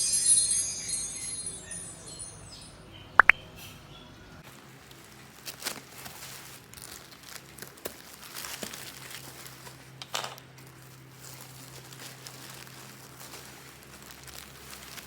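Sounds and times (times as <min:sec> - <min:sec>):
plastic packaging crinkling: 0:04.8 - 0:15.0.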